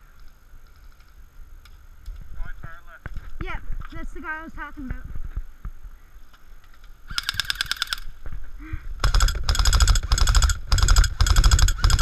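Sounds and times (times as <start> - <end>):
airsoft rifle firing full auto: 7.1 - 8.1, 9.0 - 12.0.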